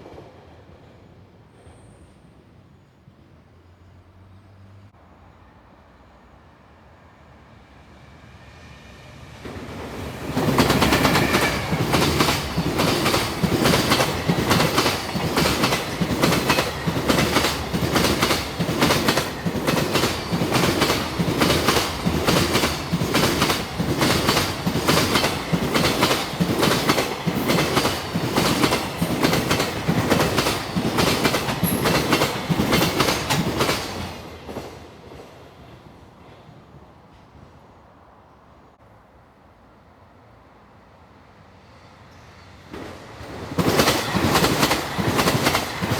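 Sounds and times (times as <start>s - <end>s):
freight train passing: 0.0s - 45.9s
train wheels clickety-clack: 9.4s - 37.6s, 42.1s - 45.9s.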